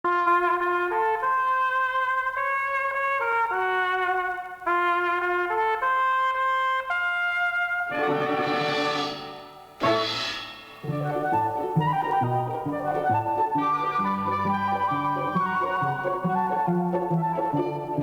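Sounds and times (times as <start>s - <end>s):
solo trumpet melody: 0.1s - 18.0s
orchestral chord: 7.9s - 11.8s.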